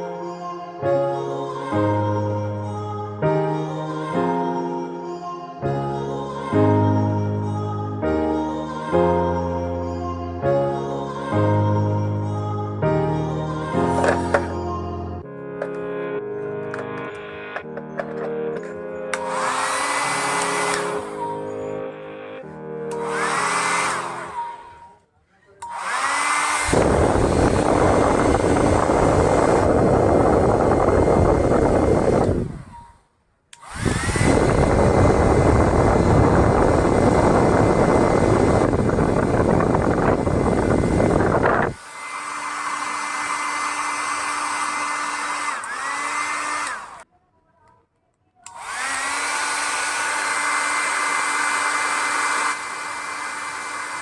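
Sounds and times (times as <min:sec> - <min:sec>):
hair dryer motor whine: 0:13.7 - 0:14.6, 0:15.6 - 0:15.9, 0:16.6 - 0:25.0, 0:25.6 - 0:33.0, 0:33.6 - 0:47.1, 0:48.4 - 0:54.0
hair dryer rushing air: 0:13.7 - 0:14.6, 0:15.6 - 0:15.9, 0:16.6 - 0:21.6, 0:22.9 - 0:25.0, 0:25.6 - 0:33.0, 0:33.6 - 0:47.1, 0:48.4 - 0:54.0.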